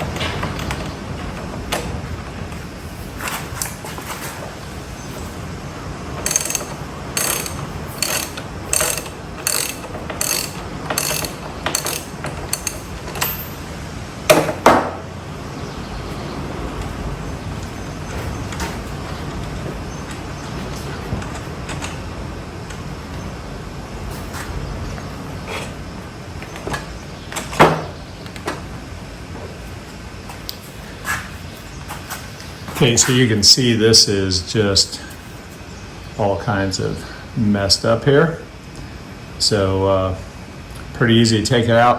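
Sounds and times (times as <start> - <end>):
loud metal clanks: 6.2 - 13.6
ratchet wrench clicking: 6.2 - 13.6
knock of parts handled: 14.3 - 15.0.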